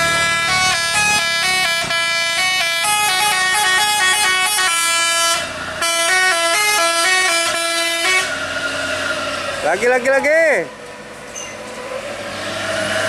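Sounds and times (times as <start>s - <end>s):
multi-note air horn tune: 0.1s - 8.4s.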